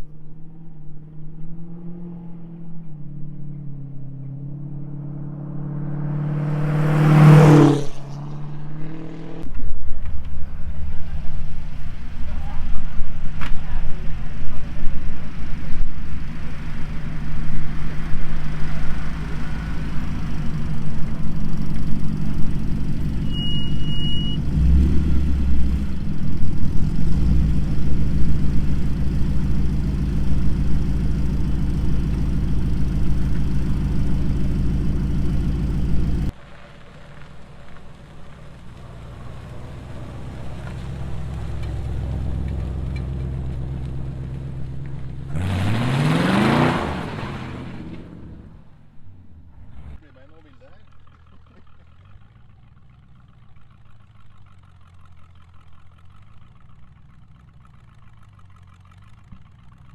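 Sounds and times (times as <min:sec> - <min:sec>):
hot rod engine running: 0:04.3 - 0:46.7, 0:48.0 - 0:59.9
short high beep: 0:23.2 - 0:24.4.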